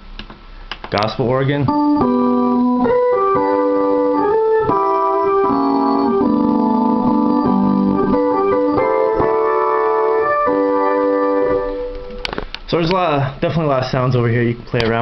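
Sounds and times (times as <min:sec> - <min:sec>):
held organ chords: 0:01.3 - 0:12.3.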